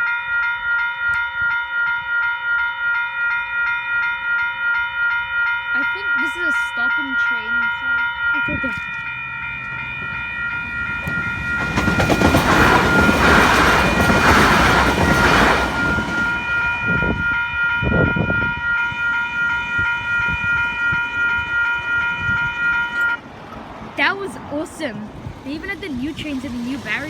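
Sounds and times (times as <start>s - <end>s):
level-crossing electronic bells: 0.0s - 14.3s, 15.0s - 23.2s, 24.8s - 27.0s
passing train rumble: 0.7s - 27.0s.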